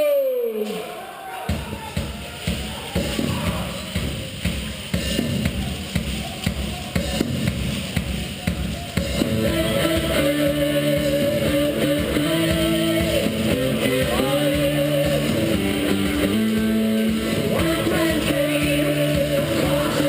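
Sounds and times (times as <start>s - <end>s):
rock music with guitar: 9.2s - 20.0s.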